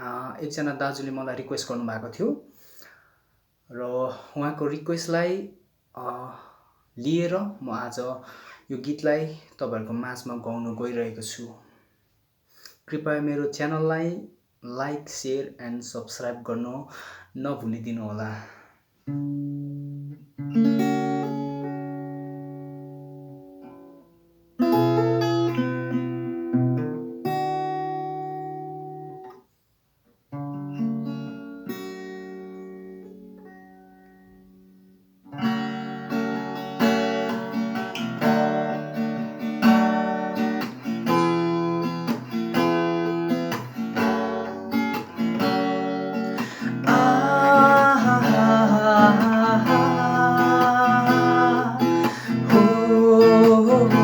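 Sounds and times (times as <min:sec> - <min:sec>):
acoustic guitar chords ringing: 0:19.1 - 0:29.3, 0:30.3 - 0:54.0
acoustic guitar strumming: 0:19.1 - 0:29.3, 0:30.3 - 0:54.0.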